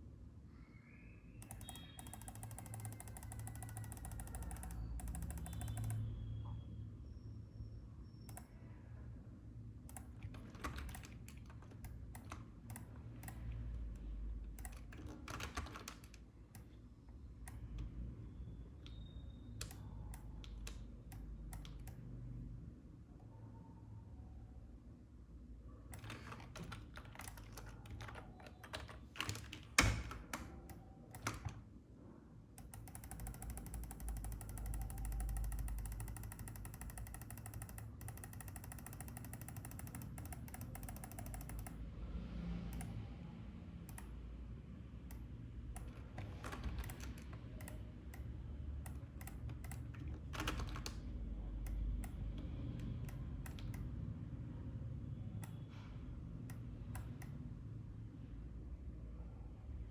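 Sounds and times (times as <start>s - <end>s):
rapid even ticking: 1.4s - 6.1s, 32.6s - 41.8s
keyboard and mouse clicking: 1.4s - 6.2s, 8.2s - 8.7s, 9.8s - 18.0s, 18.8s - 22.1s, 25.9s - 31.7s, 32.6s - 41.8s, 42.6s - 43.1s, 43.8s - 44.3s, 45.0s - 54.1s, 55.4s - 55.9s, 56.5s - 57.4s.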